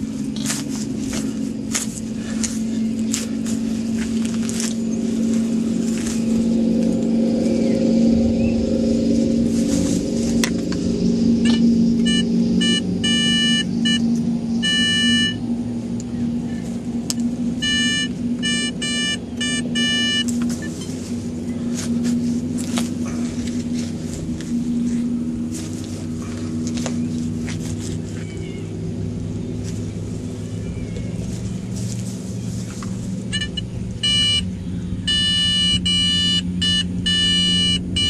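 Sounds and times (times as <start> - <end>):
low engine hum: 0.0 - 38.0
metal detector beeps: 11.4 - 15.4, 17.6 - 21.0, 33.3 - 34.5, 35.1 - 38.0.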